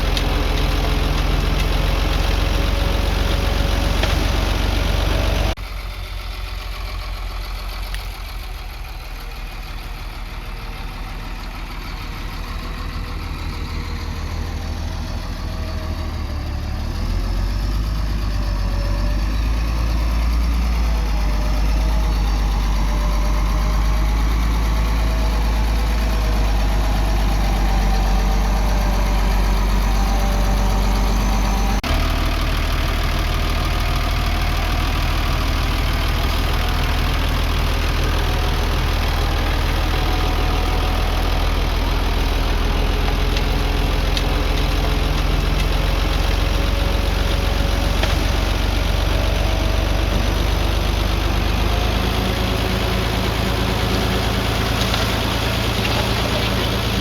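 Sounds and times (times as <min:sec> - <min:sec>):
heavy machinery diesel engine: 0:00.0 - 0:57.0.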